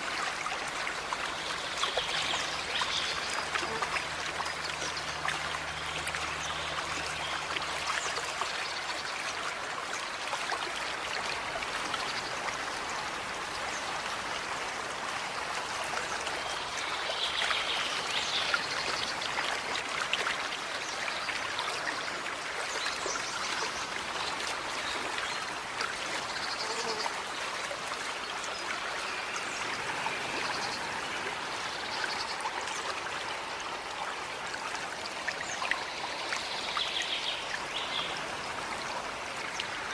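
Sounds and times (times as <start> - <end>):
forest stream trickling: 0.0 - 39.9.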